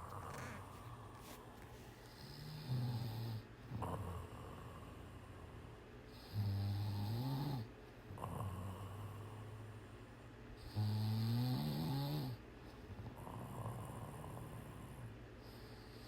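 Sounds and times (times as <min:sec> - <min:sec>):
cat snoring: 0:02.1 - 0:05.0, 0:06.1 - 0:09.4, 0:10.6 - 0:12.4, 0:13.2 - 0:16.0.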